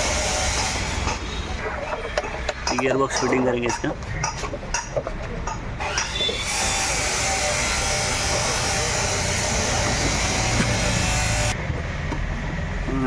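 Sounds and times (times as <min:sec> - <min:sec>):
air tool whirring: 0:05.8 - 0:11.6.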